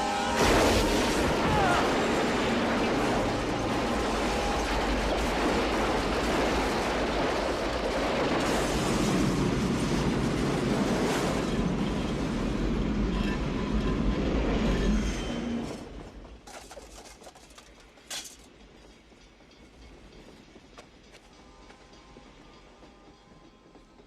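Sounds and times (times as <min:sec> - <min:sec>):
train passing at speed: 0:00.0 - 0:16.4, 0:17.9 - 0:24.0.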